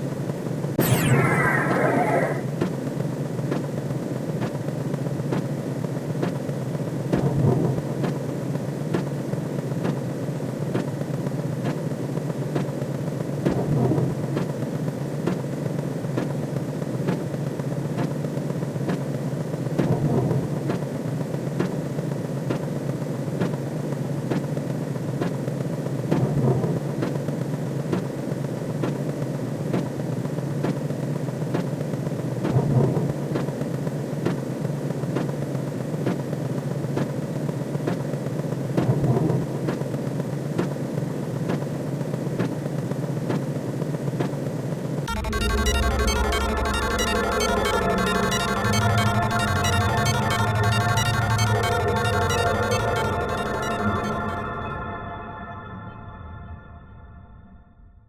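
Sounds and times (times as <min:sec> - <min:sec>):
low rumbling synthesized drone: 0:45.1 - 0:56.0.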